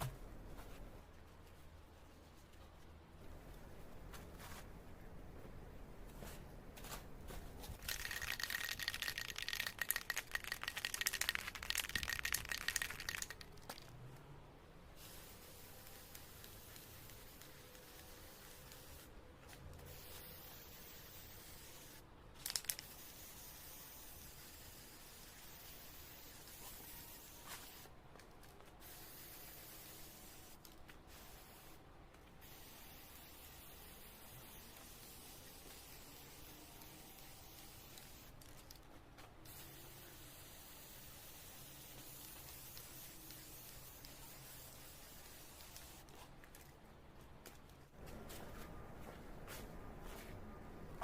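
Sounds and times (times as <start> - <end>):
faint hiss: 7.6 - 14.1, 14.7 - 19.2, 19.8 - 28.0, 28.7 - 38.8, 39.4 - 46.3.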